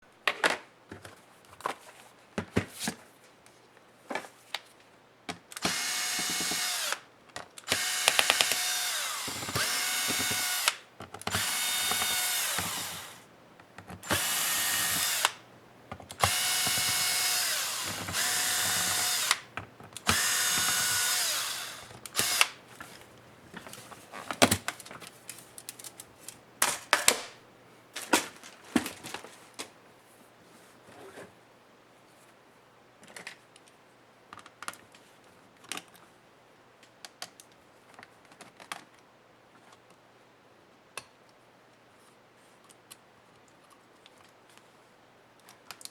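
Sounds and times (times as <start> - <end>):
electric screwdriver running: 5.6 - 7.0, 7.7 - 13.3, 14.0 - 15.4, 16.1 - 23.0
clicks and knocks of tool handling: 7.3 - 27.4.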